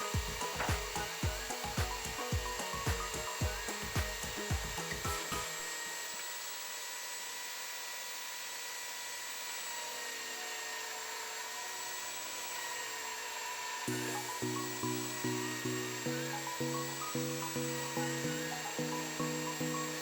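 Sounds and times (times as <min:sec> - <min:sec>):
background music: 0:00.0 - 0:05.9, 0:13.9 - 0:20.0
power tool whining: 0:00.0 - 0:20.0.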